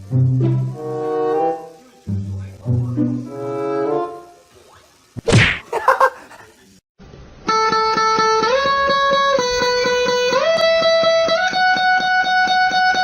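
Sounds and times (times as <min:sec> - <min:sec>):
plucked guitar music: 0:00.0 - 0:04.4, 0:07.5 - 0:13.0.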